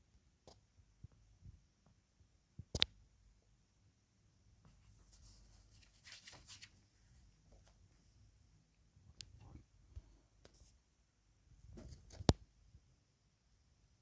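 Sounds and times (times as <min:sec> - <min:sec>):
sharp click: 0:02.7 - 0:02.9
faint scratching and rustling: 0:04.6 - 0:08.4, 0:09.2 - 0:10.9, 0:11.5 - 0:12.3.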